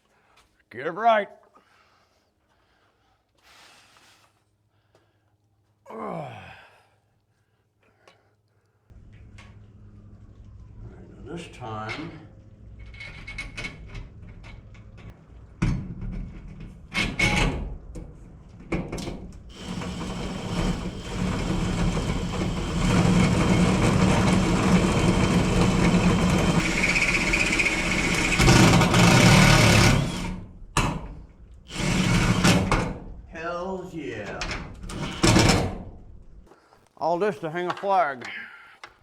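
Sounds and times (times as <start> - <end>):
power drill running under load: 19.5 - 30.4, 31.7 - 32.8.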